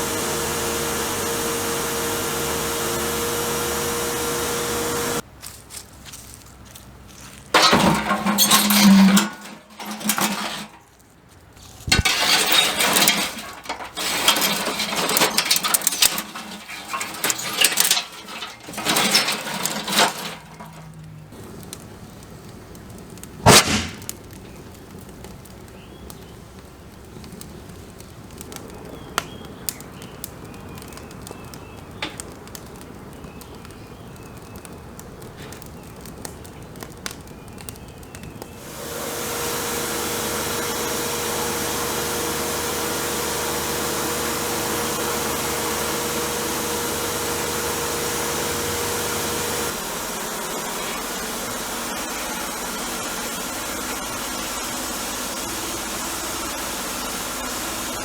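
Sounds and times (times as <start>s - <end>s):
scraping and rattling metal can: 7.5s - 11.0s, 11.6s - 21.2s.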